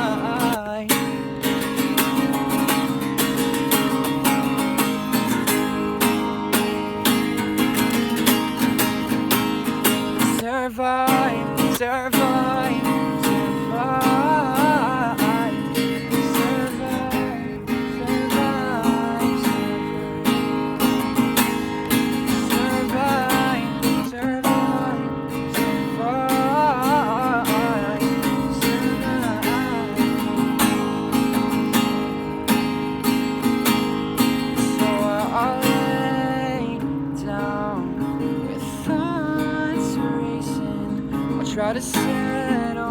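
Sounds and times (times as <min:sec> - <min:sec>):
person singing: 0:00.0 - 0:03.0, 0:10.1 - 0:31.0
acoustic guitar strumming: 0:00.0 - 0:42.9.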